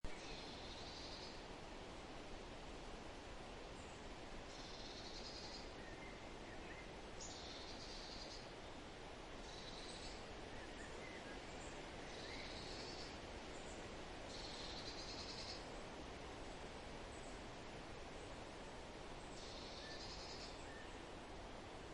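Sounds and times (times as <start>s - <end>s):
forest wind: 0.0s - 21.9s
faint lower bird chirps: 0.1s - 1.4s, 3.8s - 8.8s, 9.4s - 15.8s, 19.2s - 21.1s.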